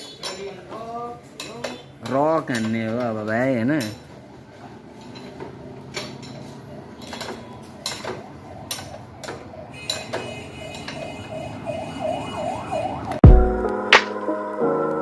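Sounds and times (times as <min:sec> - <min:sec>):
metallic clicks and clinks: 0:00.0 - 0:04.2
faint wavering siren tone: 0:07.5 - 0:13.2.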